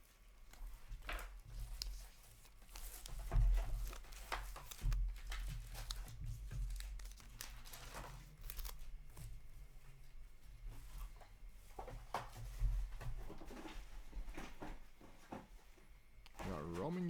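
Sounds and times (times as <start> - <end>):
foil wrappers crinkling and tearing: 0.1 - 9.5
cards scraping and sliding: 1.5 - 4.9, 6.8 - 8.8.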